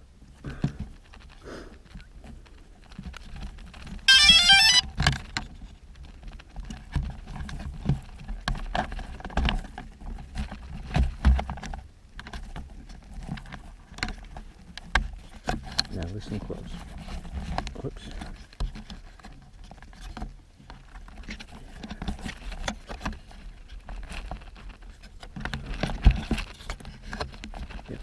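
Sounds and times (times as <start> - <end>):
electronic startup beeps: 4.1 - 4.8.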